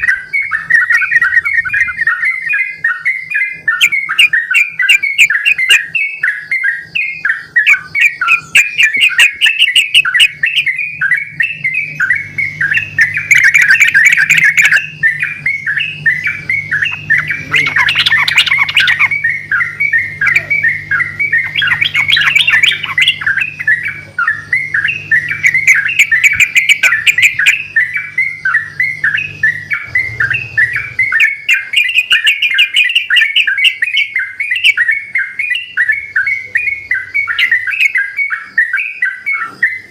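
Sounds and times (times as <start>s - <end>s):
birds singing chattering phrases: 0.0s - 39.9s.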